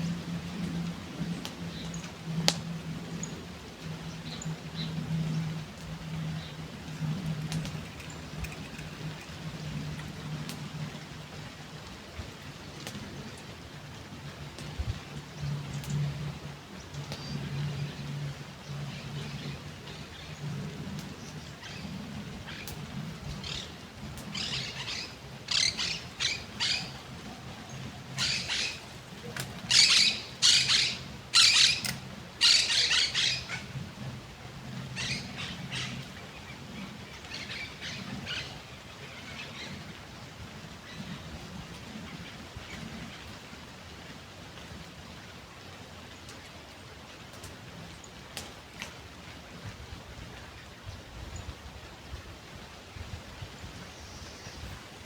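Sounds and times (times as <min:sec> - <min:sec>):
birds squawking: 0:29.7 - 0:33.7.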